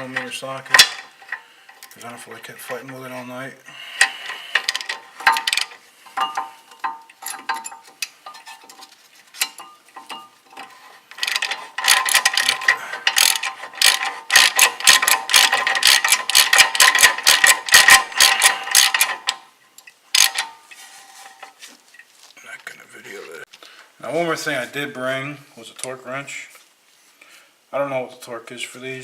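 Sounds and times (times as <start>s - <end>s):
hand ratchet clicking: 4.0s - 8.4s, 9.4s - 19.4s, 20.1s - 20.5s.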